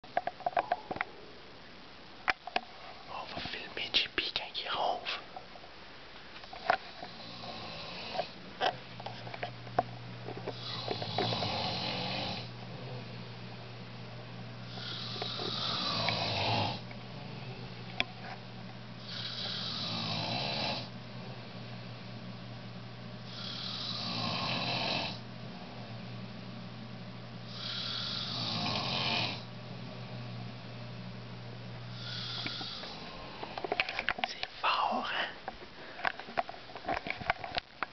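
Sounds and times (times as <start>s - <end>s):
steady low hum: 0.0s - 37.9s
person snoring: 7.1s - 8.4s, 10.5s - 13.1s, 14.6s - 16.8s, 19.0s - 20.9s, 23.2s - 25.2s, 27.5s - 29.5s, 31.9s - 33.4s.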